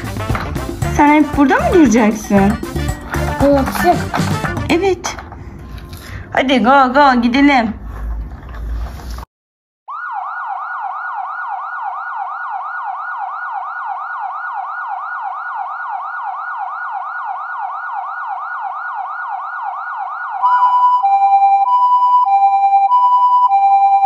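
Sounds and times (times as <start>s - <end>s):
electronic siren wailing: 9.9s - 24.0s
two-tone hi-lo siren: 9.9s - 24.0s.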